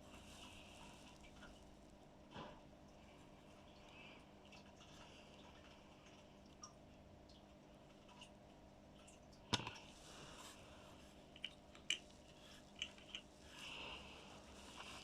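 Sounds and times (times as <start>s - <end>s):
soft rustle: 0.0s - 3.7s, 9.8s - 15.0s.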